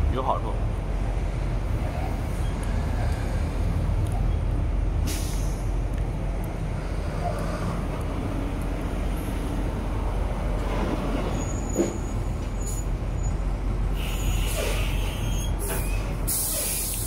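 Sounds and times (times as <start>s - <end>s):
diesel truck engines idling: 0.0s - 17.0s
air brake hissing: 5.0s - 5.7s, 14.0s - 17.0s.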